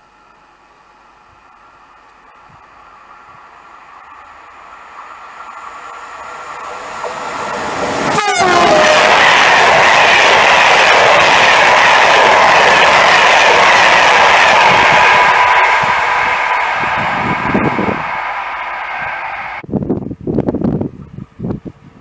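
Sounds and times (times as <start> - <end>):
passenger train approaching: 0.0 - 22.0
train coaches rushing by: 2.6 - 19.6
locomotive horn blast: 8.0 - 9.5.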